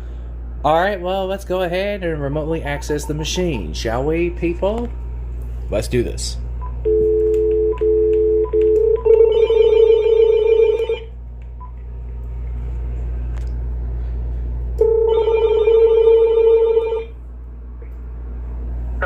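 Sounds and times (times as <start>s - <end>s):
telephone ringing: 6.8s - 11.1s, 14.8s - 17.2s
phone dial tone: 6.9s - 11.1s, 14.8s - 17.1s.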